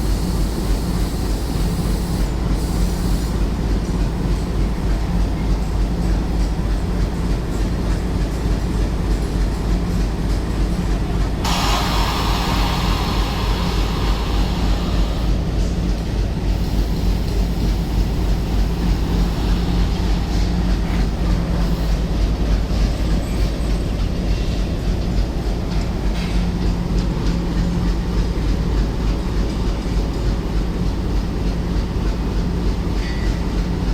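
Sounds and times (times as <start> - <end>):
train rumbling along track: 0.0 - 33.9
harsh hissing: 11.5 - 15.6.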